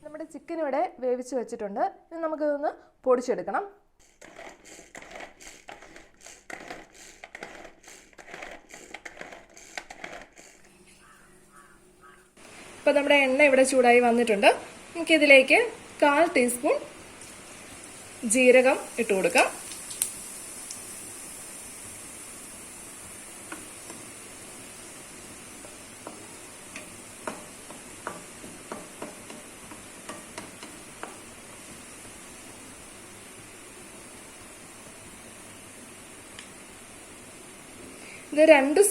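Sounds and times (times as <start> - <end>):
faint steady sizzle: 0.0 - 38.9
seeds popping in hot oil: 17.2 - 34.3.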